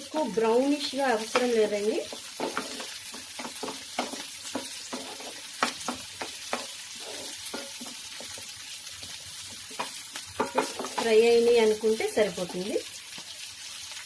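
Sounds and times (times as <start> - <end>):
food sizzling in hot oil: 0.0 - 14.0
spatula scraping a pan: 0.8 - 11.2.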